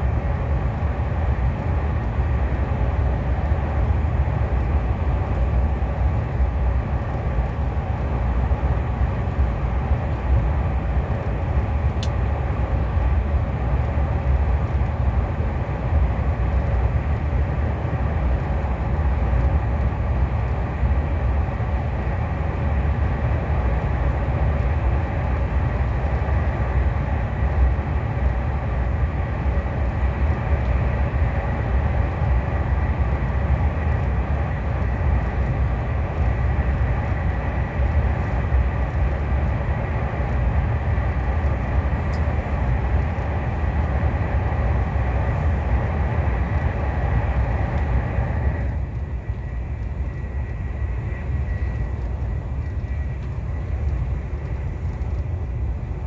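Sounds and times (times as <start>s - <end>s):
train rumble inside passenger car: 0.0s - 56.0s.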